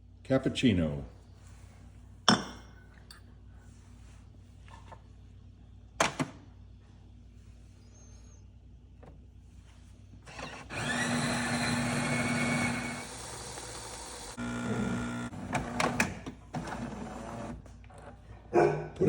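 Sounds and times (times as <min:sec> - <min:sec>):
espresso machine pump humming: 0:10.3 - 0:17.6.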